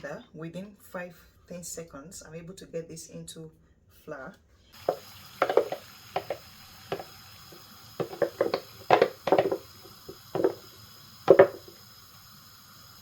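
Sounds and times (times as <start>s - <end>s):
blender jar knocks and clunks: 8.0s - 9.7s, 10.3s - 10.7s, 11.3s - 11.8s.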